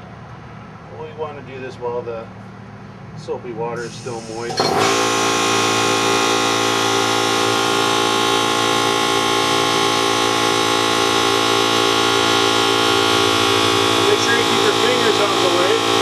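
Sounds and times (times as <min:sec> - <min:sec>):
air compressor running: 0:03.8 - 0:16.0.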